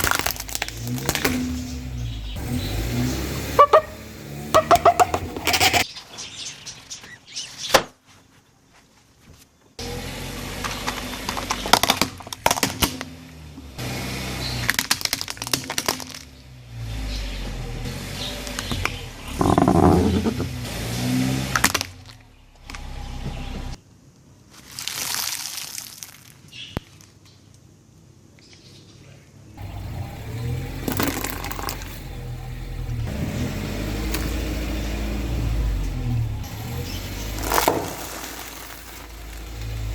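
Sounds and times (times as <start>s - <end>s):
tyres crushing crunchy objects: 0.0s - 3.8s, 14.4s - 16.3s, 24.5s - 27.2s, 30.6s - 32.0s, 33.0s - 39.9s
low engine hum: 0.0s - 5.8s, 16.1s - 23.8s, 29.6s - 39.9s
sharp crack: 0.0s - 5.9s, 35.8s - 39.9s.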